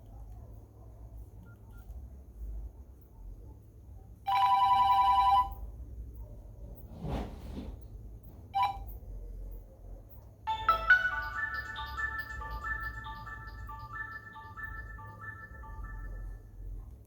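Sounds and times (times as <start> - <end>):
two-tone phone ringtone: 4.3 - 5.6, 10.5 - 16.7
soft rustle: 6.8 - 8.5.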